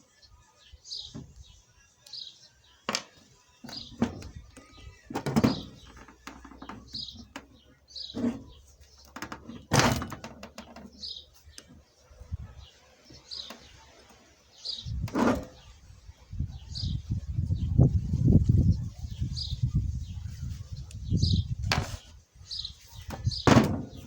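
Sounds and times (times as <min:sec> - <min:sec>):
small bird chirping: 0:10.9 - 0:21.6.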